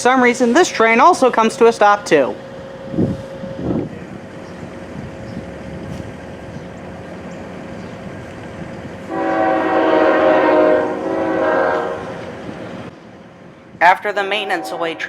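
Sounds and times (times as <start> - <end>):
low rumble of waiting trains: 0.0 - 15.0
train horn chime chord: 9.1 - 12.1.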